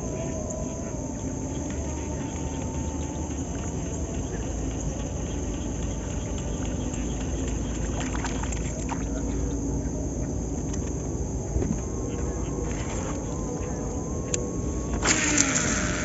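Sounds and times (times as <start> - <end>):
insects chirring: 0.0 - 16.0
low drone: 0.0 - 16.0
sharp clicks: 14.3 - 16.0.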